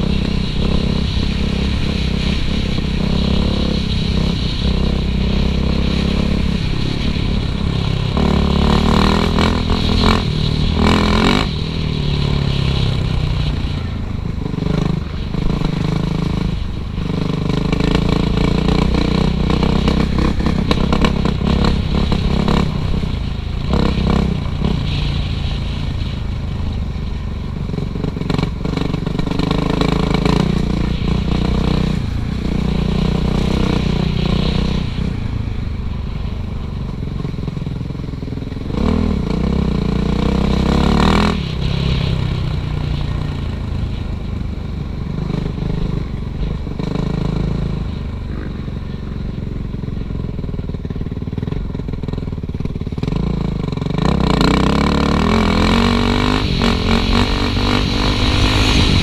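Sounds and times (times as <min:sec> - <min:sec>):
dirt bike engine revving: 0:00.0 - 0:25.8, 0:27.6 - 0:35.3, 0:38.6 - 0:43.6, 0:53.0 - 0:59.0.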